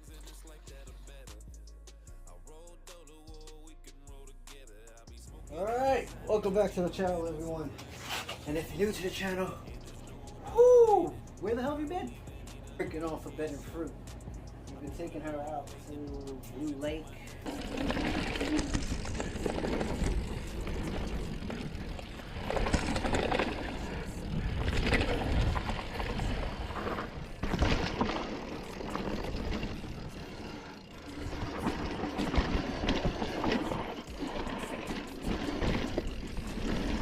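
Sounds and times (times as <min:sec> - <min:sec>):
bike tyre noise on dirt: 0:14.4 - 0:37.0
short rattles and clicks: 0:15.6 - 0:37.0.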